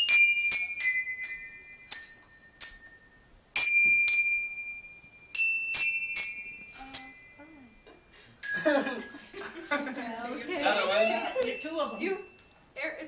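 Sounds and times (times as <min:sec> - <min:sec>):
hand bells ringing a tune: 0:00.0 - 0:10.0, 0:10.8 - 0:12.6.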